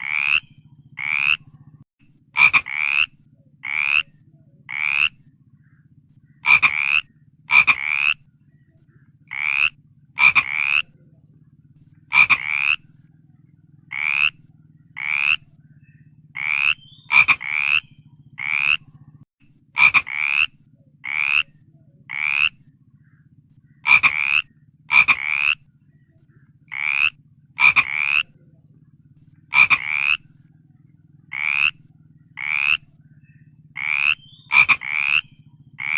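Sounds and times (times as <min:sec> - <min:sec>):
frog croaking: 0:00.0 - 0:08.3, 0:09.2 - 0:25.7, 0:26.5 - 0:35.9
steady low hum: 0:00.0 - 0:35.9.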